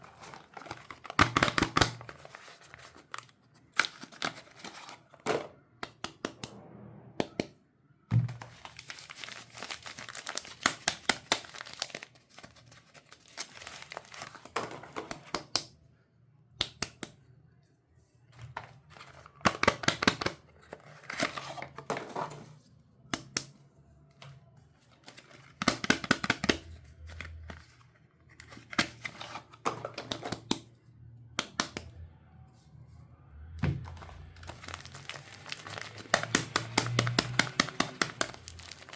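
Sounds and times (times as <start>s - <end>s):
wrappers crinkling and tearing: 8.4s - 14.5s, 33.9s - 38.9s.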